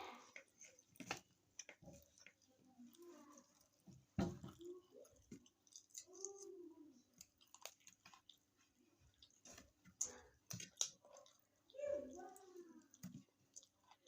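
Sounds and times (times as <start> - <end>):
person chewing wet mouth noises: 4.5 - 14.0.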